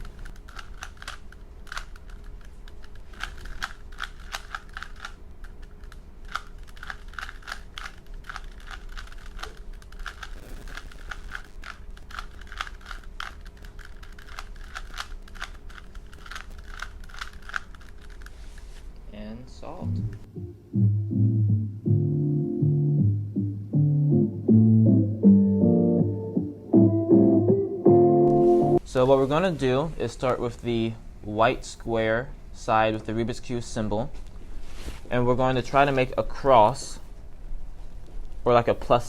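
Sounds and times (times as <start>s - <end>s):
puzzle cube plastic clicks: 0.0s - 18.3s
faint steady hum: 0.0s - 27.1s, 27.8s - 39.0s.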